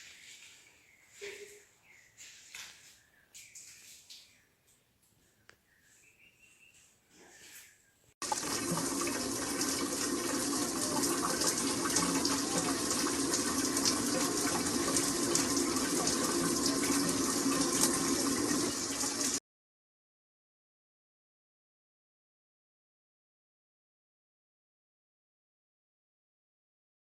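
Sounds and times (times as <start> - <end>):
shower water spraying: 8.2 - 19.4.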